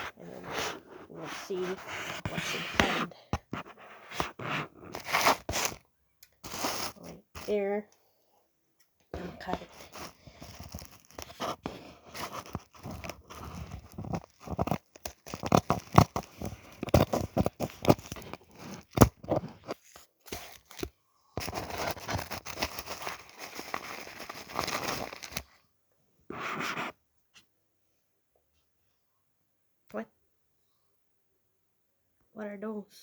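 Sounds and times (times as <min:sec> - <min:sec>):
packaging rustle: 0:04.2 - 0:05.8, 0:06.4 - 0:07.6, 0:09.2 - 0:25.6
packet crinkling and tearing: 0:04.9 - 0:05.8, 0:06.4 - 0:07.5, 0:09.2 - 0:25.5
scissors snipping packaging: 0:05.0 - 0:05.8, 0:06.5 - 0:07.6, 0:09.4 - 0:25.4.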